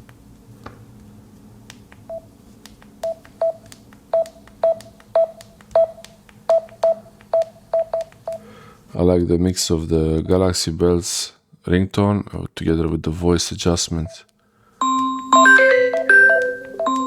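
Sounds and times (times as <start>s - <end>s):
phone beeping: 3.0s - 8.4s, 14.8s - 17.0s.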